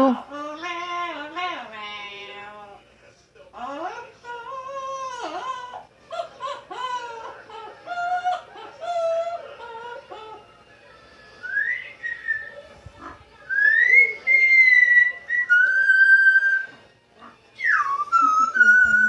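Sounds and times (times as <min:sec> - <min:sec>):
parrot calling and whistling: 0:11.4 - 0:16.8, 0:17.6 - 0:19.0.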